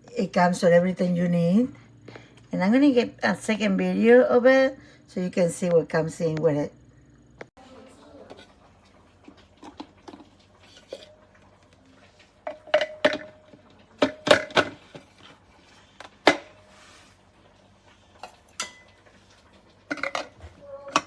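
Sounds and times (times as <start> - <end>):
kitchen parts clinking and knocking: 12.5 - 15.1, 19.9 - 21.0.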